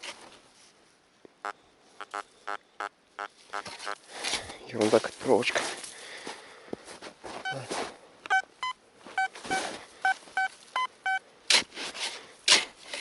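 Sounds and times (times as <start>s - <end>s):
metal detector beeping: 1.4s - 2.6s, 8.3s - 11.2s.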